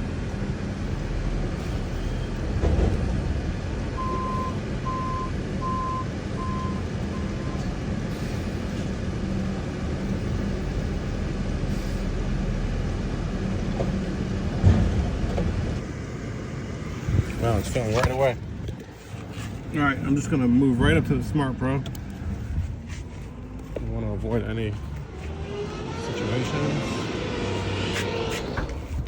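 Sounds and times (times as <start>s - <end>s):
thump: 2.6s - 3.1s
low hum: 21.0s - 29.0s.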